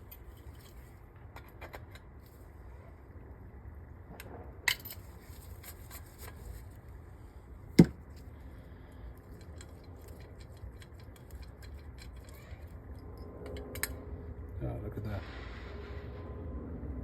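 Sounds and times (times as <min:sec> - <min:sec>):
metal parts clicking and clinking: 0:00.0 - 0:02.1, 0:09.1 - 0:14.0.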